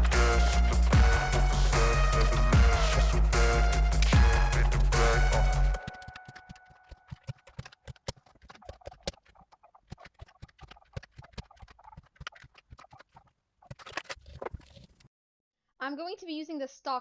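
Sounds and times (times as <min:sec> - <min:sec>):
music track: 0:00.0 - 0:07.1
mechanical keyboard typing: 0:05.8 - 0:09.3.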